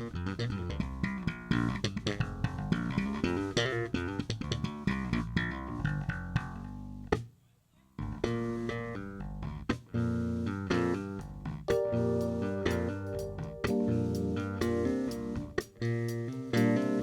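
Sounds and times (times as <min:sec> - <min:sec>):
instrumental band music: 0:10.2 - 0:17.0
guitar playing quick notes: 0:11.7 - 0:17.0.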